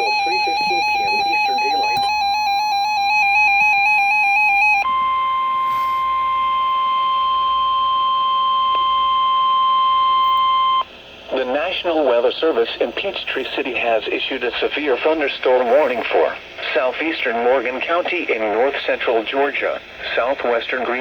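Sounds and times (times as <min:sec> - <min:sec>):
steady high electronic alarm tone: 0:00.0 - 0:10.8.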